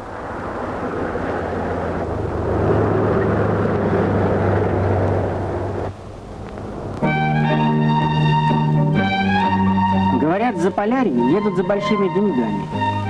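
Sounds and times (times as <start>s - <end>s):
heavy engine humming: 0.0s - 13.0s
music: 7.0s - 13.0s.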